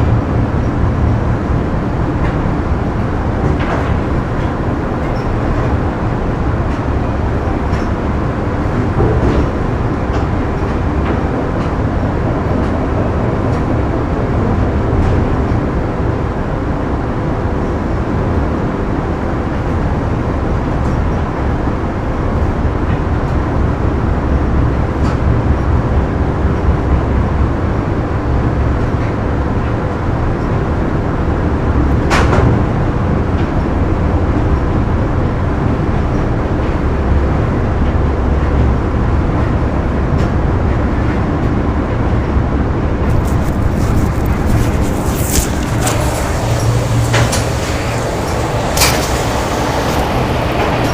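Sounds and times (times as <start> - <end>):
constant hum: 0.0 - 50.9
machinery rumble: 25.6 - 50.9.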